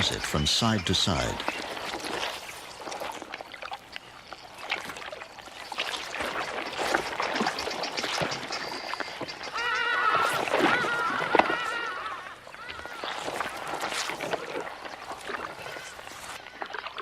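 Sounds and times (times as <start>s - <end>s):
mud sloshing and squelching: 0.0s - 17.0s
high-pitched animal calls: 7.6s - 14.1s.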